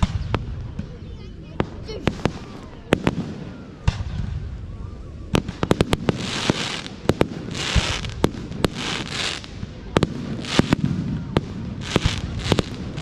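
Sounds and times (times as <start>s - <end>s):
fireworks bangs and cracks: 0.0s - 4.7s, 5.3s - 13.0s
fireworks hissing crackle: 0.0s - 13.0s.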